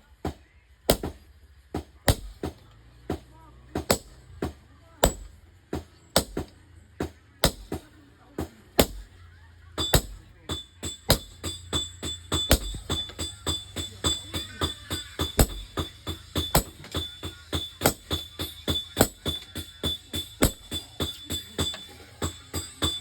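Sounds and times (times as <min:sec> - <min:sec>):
anvil metallic ring: 0:09.8 - 0:23.0.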